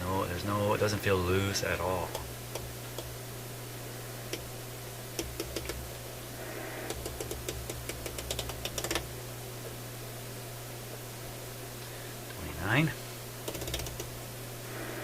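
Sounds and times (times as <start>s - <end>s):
steady low hum: 0.0s - 15.0s
radio band switch clicking: 4.3s - 4.5s, 5.1s - 5.8s.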